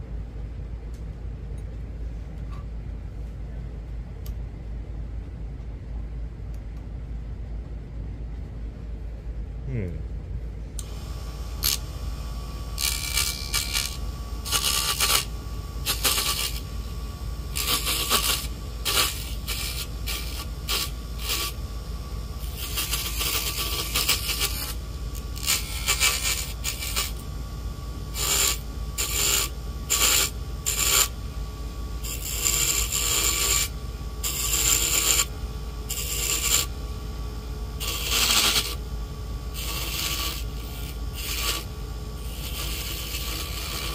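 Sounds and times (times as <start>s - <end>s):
lathe motor hum: 10.8s - 43.9s.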